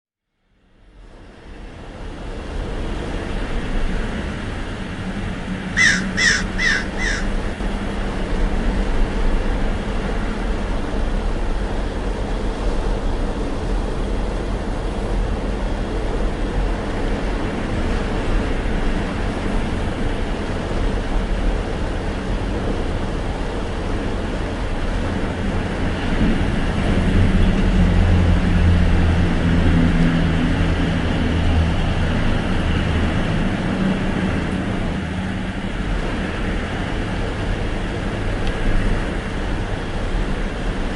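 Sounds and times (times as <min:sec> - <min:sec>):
low rumbling background noise: 0:00.4 - 0:40.9
short bird-like calls: 0:05.8 - 0:07.4.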